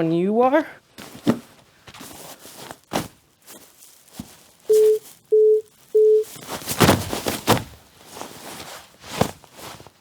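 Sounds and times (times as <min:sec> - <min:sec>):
faint rustles: 0:01.0 - 0:10.0
short beeps: 0:04.7 - 0:06.3.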